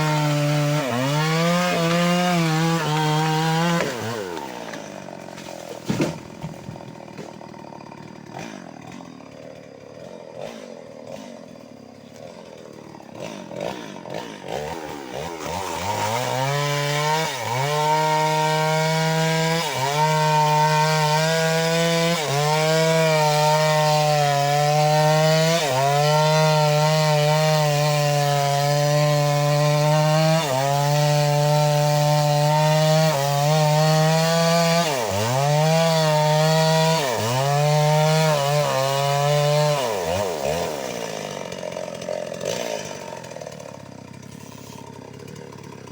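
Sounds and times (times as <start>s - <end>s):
chainsaw cutting into wood: 0.0s - 45.9s
chainsaw idling and revving: 0.0s - 45.9s.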